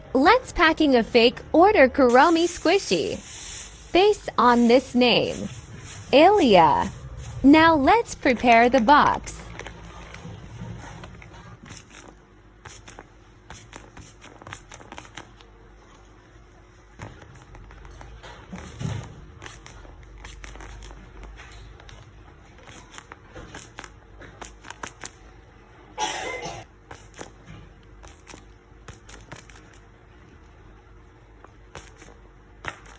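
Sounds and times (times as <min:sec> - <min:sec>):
paper crinkling: 0:08.2 - 0:25.4.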